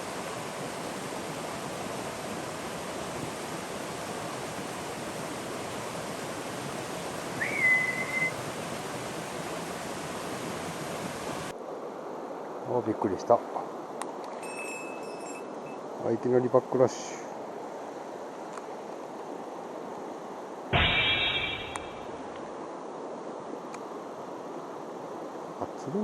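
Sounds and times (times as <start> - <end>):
stream rushing: 0.0 - 12.6, 17.3 - 25.6
short rising whistle: 7.4 - 8.4.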